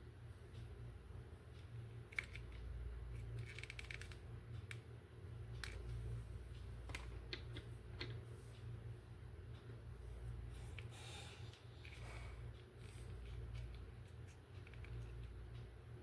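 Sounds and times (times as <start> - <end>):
steady low hum: 0.0 - 16.0
plastic toy clicking: 2.1 - 2.6, 3.2 - 4.8.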